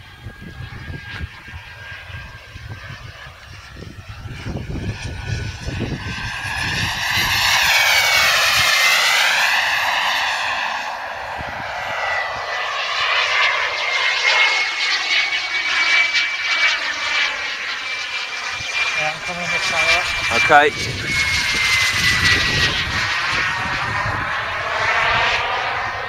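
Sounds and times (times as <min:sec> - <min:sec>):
model jet turbine whining: 0:00.0 - 0:26.0.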